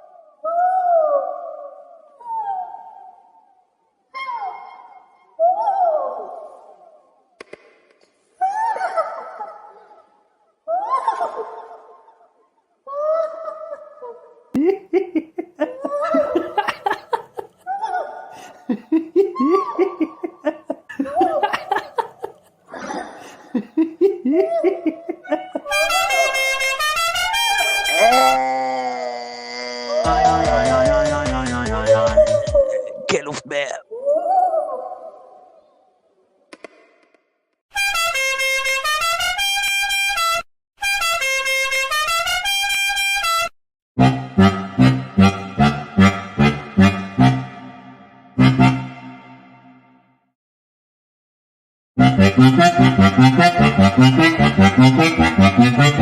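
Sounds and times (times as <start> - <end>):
person laughing: 14.6 - 26.4
buzzy horn-like melody: 25.7 - 28.4, 37.8 - 49.8, 52.0 - 56.0.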